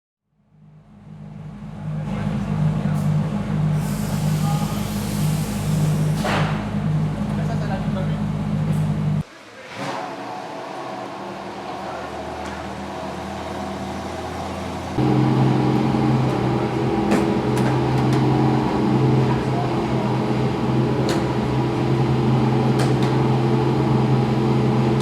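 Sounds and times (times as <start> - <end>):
race car engine running: 11.1 - 25.0.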